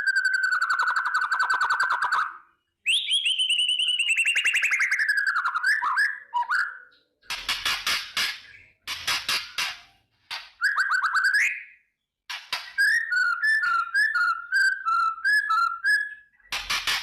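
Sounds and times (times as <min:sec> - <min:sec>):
bird singing: 0:00.0 - 0:07.2, 0:10.6 - 0:16.9
clear alternating bird whistles: 0:00.0 - 0:07.2, 0:09.4 - 0:17.0
harsh crackling bird rattle: 0:07.3 - 0:10.6, 0:16.5 - 0:17.0.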